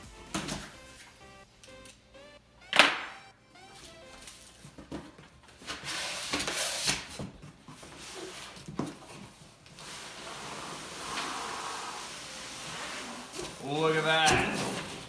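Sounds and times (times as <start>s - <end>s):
cardboard rustling and scraping: 4.2s - 15.0s.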